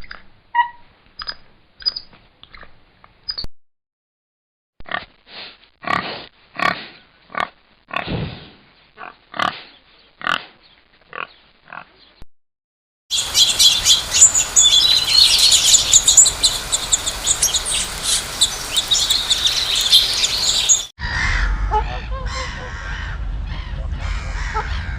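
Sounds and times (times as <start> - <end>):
high-pitched bird chirping: 3.3 - 3.5, 13.1 - 20.9.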